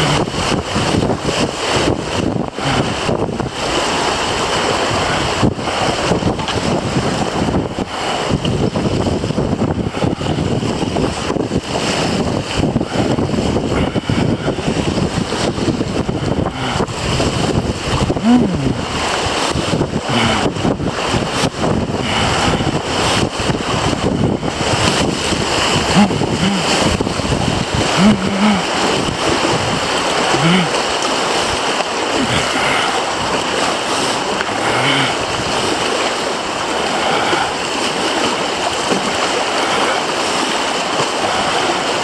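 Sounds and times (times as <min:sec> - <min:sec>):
river water rushing over rapids: 0:00.0 - 0:42.0
wind buffeting microphone: 0:00.0 - 0:42.0.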